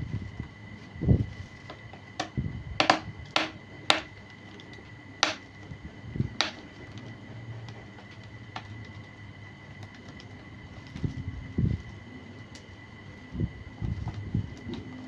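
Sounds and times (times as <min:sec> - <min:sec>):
faint steady high whine: 0:00.0 - 0:15.0
plastic clicks and knocks: 0:02.2 - 0:04.1, 0:06.4 - 0:06.6.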